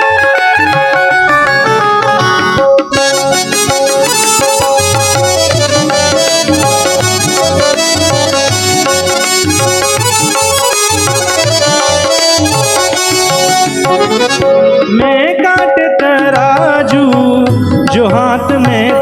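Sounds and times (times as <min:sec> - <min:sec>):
harmonium melody: 0:00.0 - 0:19.0
hand drum beat: 0:01.9 - 0:15.8.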